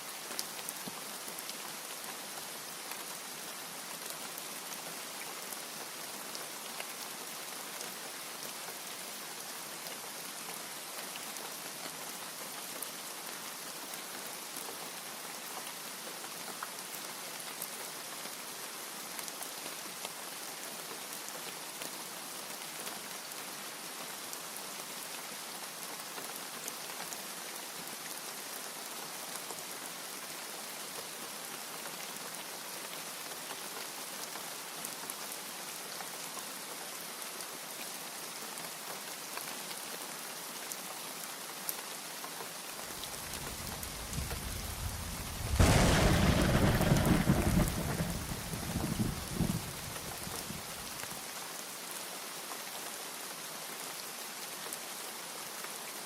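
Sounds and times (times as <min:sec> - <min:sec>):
heavy rain: 0:00.0 - 0:56.0
low thunder rumble: 0:43.4 - 0:49.9.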